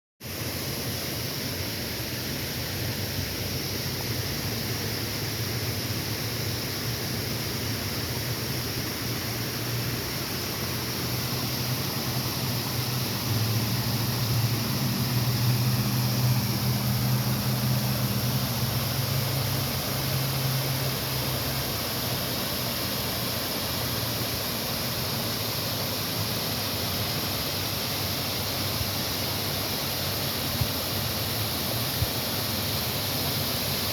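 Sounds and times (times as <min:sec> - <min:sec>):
waterfall rushing: 0:00.2 - 0:33.9.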